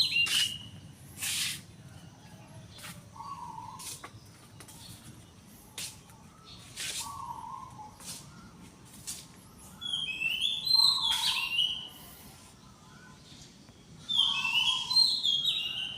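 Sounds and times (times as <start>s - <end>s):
short sharp bird chirps: 0.0s - 1.6s, 9.9s - 11.9s.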